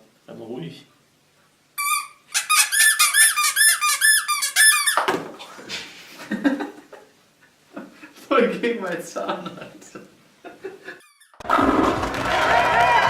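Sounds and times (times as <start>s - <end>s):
rubber squeaker toy squeaking: 1.8s - 5.1s, 11.0s - 11.5s.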